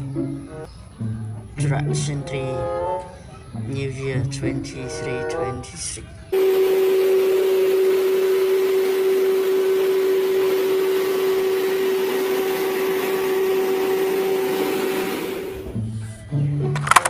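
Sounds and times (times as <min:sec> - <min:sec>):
whirring machine hum: 0:06.3 - 0:15.9.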